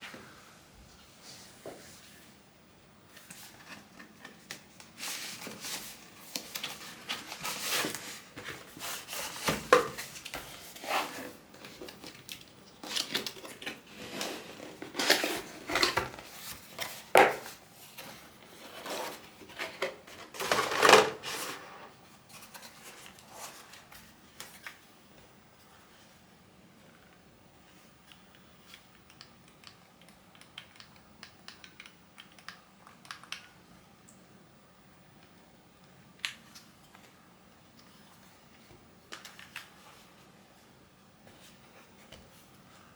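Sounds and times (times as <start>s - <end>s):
packaging rustling and scraping: 3.5s - 24.8s.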